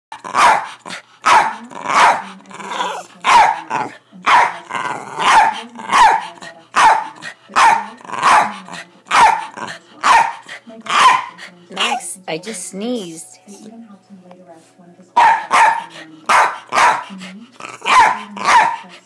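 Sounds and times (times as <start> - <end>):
dog growling: 0.1 - 12.1, 15.4 - 19.0
dog barking: 0.3 - 4.6, 5.2 - 12.0, 15.2 - 18.9.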